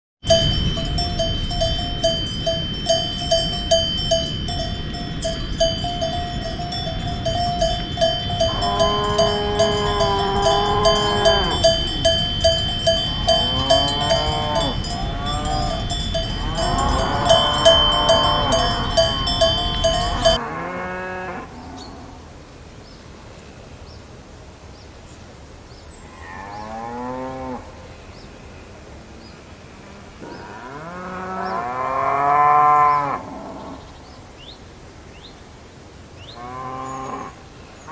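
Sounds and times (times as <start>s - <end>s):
cowbell clanking: 0.2s - 20.4s
low background rumble: 0.3s - 20.4s
cows mooing: 0.3s - 21.9s.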